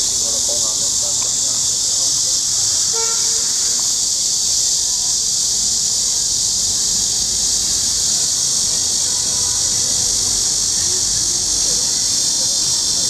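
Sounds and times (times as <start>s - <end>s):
cicadas droning: 0.0s - 13.0s.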